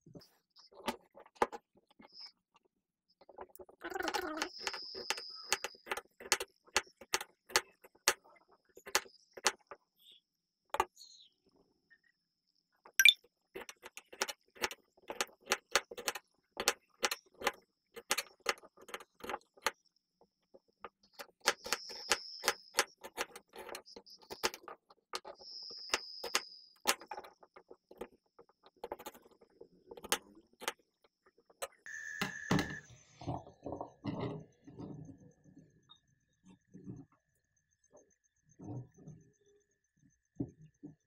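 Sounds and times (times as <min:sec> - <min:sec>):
utensils knocking and clicking: 0:03.5 - 0:09.8, 0:12.9 - 0:19.8, 0:20.8 - 0:30.8.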